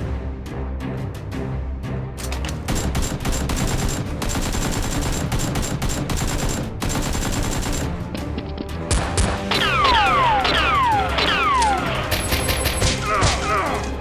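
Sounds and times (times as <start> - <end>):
background music: 0.0 - 14.0
machine gun fire: 2.7 - 7.9.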